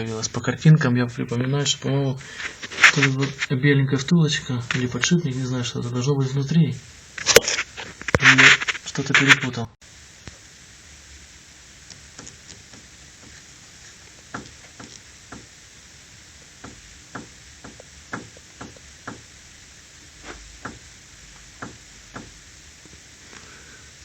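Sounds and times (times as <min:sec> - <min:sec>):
steering rack knocking: 0:16.6 - 0:19.3, 0:21.6 - 0:22.4.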